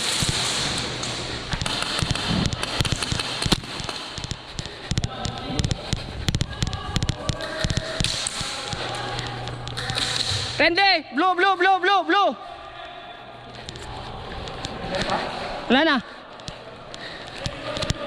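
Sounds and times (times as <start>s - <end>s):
airsoft guns firing: 0.0s - 4.4s.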